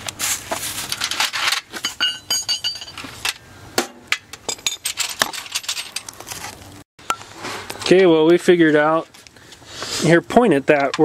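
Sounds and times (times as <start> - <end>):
metal tools clinking: 0.8 - 3.4, 4.3 - 6.5
metallic ring: 1.8 - 3.1.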